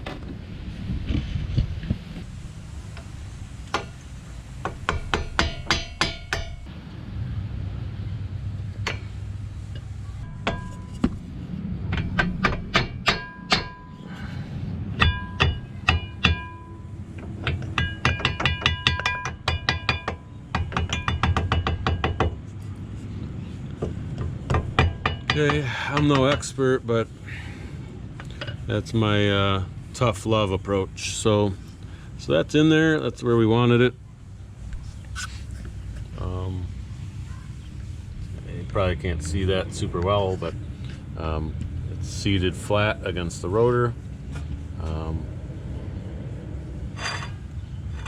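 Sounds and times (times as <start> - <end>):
mallet tapping metal: 4.6 - 6.7, 10.3 - 11.2, 11.9 - 14.0, 15.0 - 16.8, 17.4 - 22.4.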